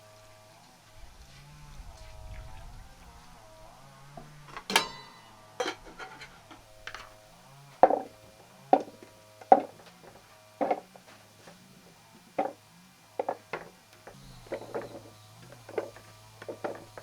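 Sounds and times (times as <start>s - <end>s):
sharp wooden knocks: 7.8s - 8.1s, 8.7s - 11.0s, 12.4s - 12.6s, 13.2s - 17.0s.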